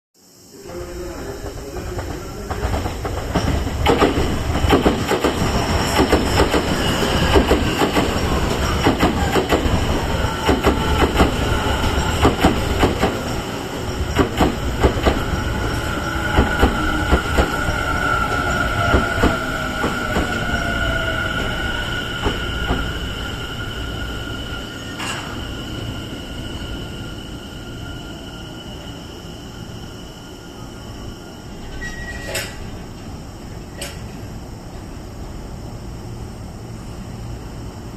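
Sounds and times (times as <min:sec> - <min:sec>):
train wheels clicking over rail joints: 0:01.4 - 0:13.3, 0:14.0 - 0:15.4, 0:31.6 - 0:34.9.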